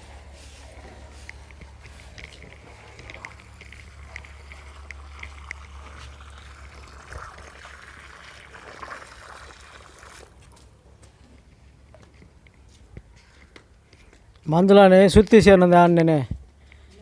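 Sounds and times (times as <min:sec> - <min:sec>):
steady low hum: 0:00.0 - 0:14.4
water pouring and trickling: 0:02.1 - 0:10.6.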